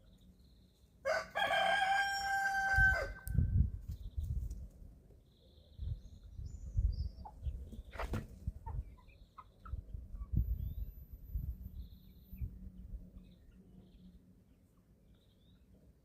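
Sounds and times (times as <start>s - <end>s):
chickens pecking and scratching: 3.6s - 5.2s, 7.2s - 10.4s
chicks chirping: 5.2s - 15.8s.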